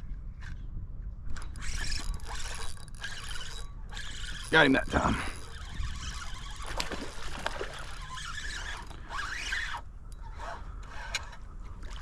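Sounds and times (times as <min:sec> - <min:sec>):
water splashing: 0:06.6 - 0:08.0.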